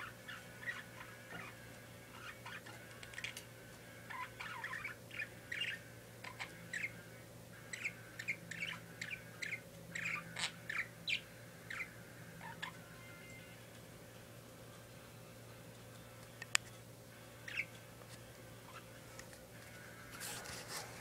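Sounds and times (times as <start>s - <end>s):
parakeet chirping: 0.0s - 3.4s, 4.0s - 13.5s, 17.4s - 17.8s, 18.6s - 19.0s
faint steady hum: 0.0s - 21.0s.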